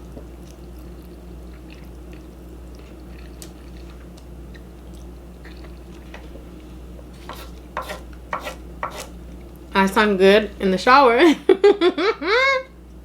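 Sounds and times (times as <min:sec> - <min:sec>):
chewing food: 0:00.0 - 0:08.3.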